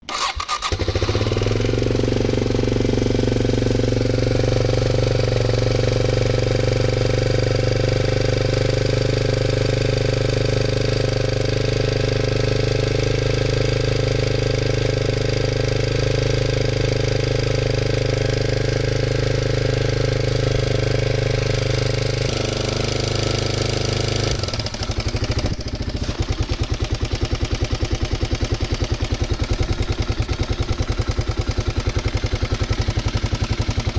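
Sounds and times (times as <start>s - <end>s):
motorcycle engine clattering: 19.1s - 33.9s.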